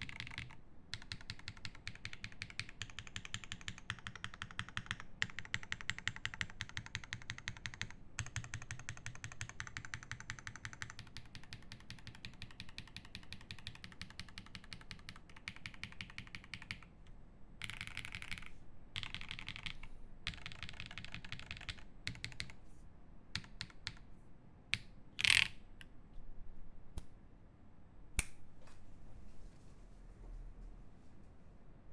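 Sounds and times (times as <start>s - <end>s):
mechanical keyboard typing: 0.0s - 16.9s, 17.6s - 22.6s, 23.4s - 24.0s, 25.2s - 25.6s.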